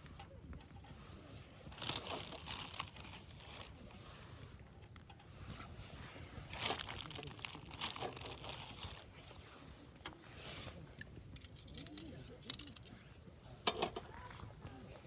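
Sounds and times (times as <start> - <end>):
packaging crinkling and rustling: 1.7 - 3.8, 6.5 - 9.1.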